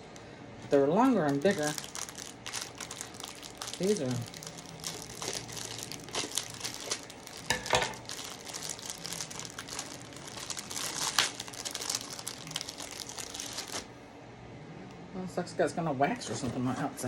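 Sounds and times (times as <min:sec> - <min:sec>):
snack wrapper crinkling: 0:00.7 - 0:13.9.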